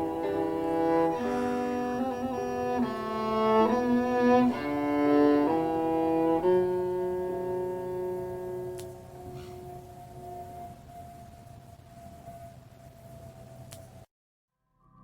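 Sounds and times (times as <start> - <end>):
slow bowed strings music: 0.0 - 9.6.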